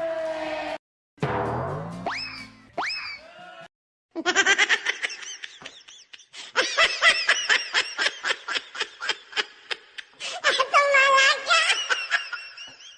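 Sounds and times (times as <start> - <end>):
rising whistle glides: 2.0 - 3.1
high-pitched cartoon laugh: 4.2 - 12.7.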